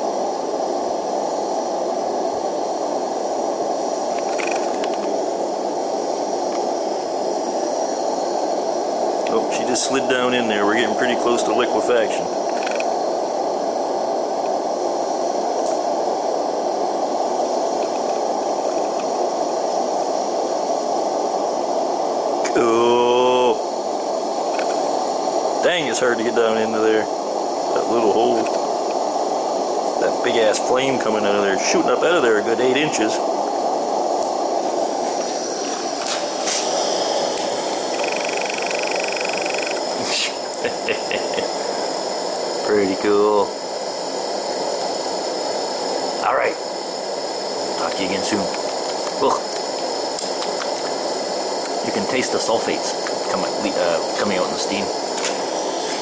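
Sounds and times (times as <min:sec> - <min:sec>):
burner flame roaring: 0:00.0 - 0:56.0
high whine: 0:00.0 - 0:56.0
faint crackles: 0:03.7 - 0:06.8, 0:09.2 - 0:20.5, 0:29.9 - 0:43.5.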